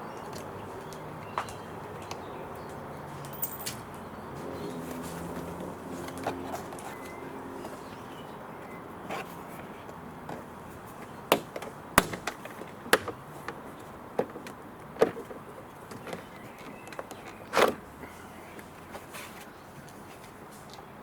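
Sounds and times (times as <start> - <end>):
clicks and knocks on car door: 11.3 - 13.6.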